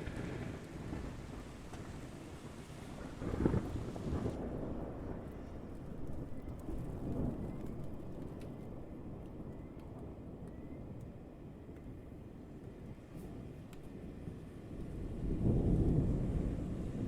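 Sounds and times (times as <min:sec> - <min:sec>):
thunder rumbling: 0:00.0 - 0:10.2, 0:14.0 - 0:17.0.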